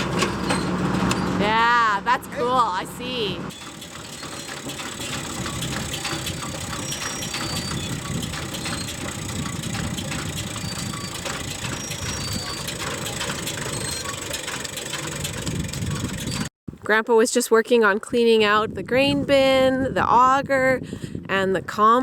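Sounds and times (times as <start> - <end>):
farm machinery humming: 0.0 - 16.5
fast irregular clicks: 3.5 - 16.5.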